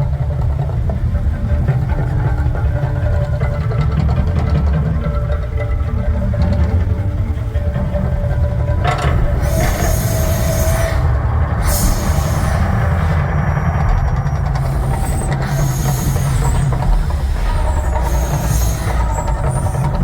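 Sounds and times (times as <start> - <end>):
deep rumble of eruption show: 7.3 - 20.0
hissing surges: 8.9 - 20.0.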